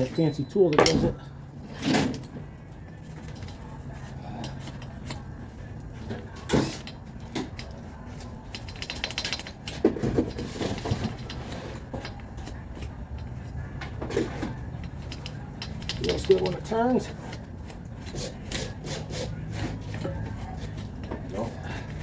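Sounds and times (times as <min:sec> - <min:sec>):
metal parts knocking and clattering: 0:08.5 - 0:12.3, 0:13.9 - 0:17.1.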